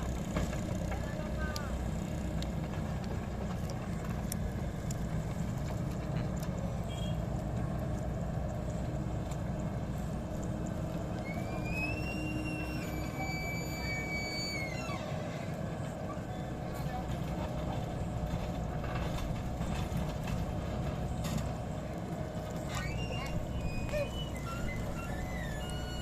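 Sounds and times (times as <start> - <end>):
diesel engine rumble: 0.0 - 26.0
high whistling tone: 11.2 - 15.4, 22.7 - 26.0.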